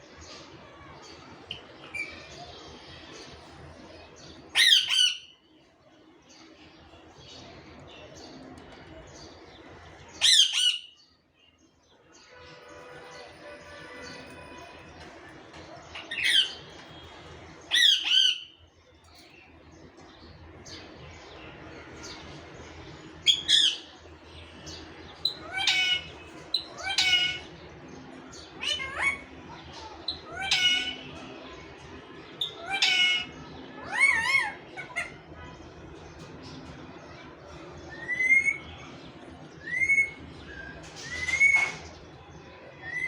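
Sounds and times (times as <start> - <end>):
parrot squawking: 25.2 - 27.5, 28.6 - 29.3, 30.2 - 31.1, 32.4 - 35.2.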